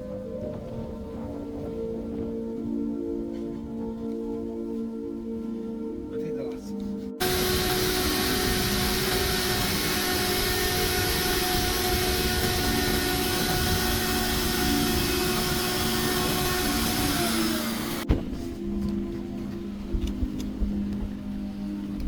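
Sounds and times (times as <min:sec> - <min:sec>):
power tool whirring: 0:07.2 - 0:18.1.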